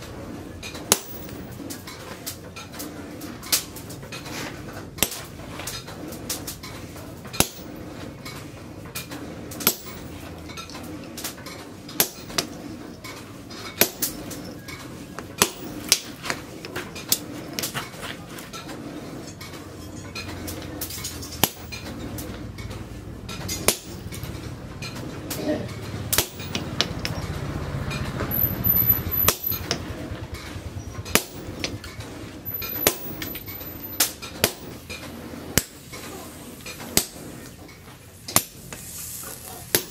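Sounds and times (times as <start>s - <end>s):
hammer striking steel on anvil: 7.4s - 7.8s, 9.6s - 10.1s, 12.0s - 12.5s, 15.4s - 16.2s, 21.4s - 21.8s, 23.6s - 24.0s, 26.1s - 27.2s, 31.1s - 31.8s, 32.6s - 33.4s.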